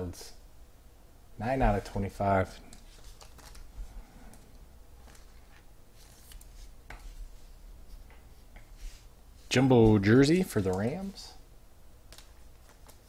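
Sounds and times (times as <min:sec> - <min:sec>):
low steady hum: 0:00.0 - 0:13.0
trading cards rustling: 0:01.6 - 0:07.2, 0:09.7 - 0:11.2, 0:12.1 - 0:13.0.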